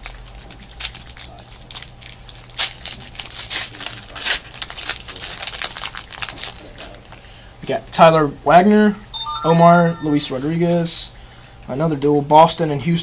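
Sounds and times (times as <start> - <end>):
wrappers tearing and crinkling: 0.0 - 7.0.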